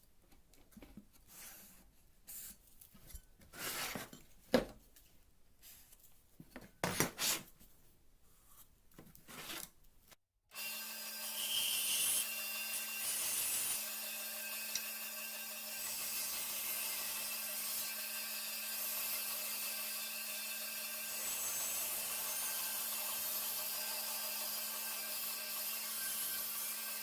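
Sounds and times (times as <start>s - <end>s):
hand scraping on workpiece: 3.4s - 4.2s.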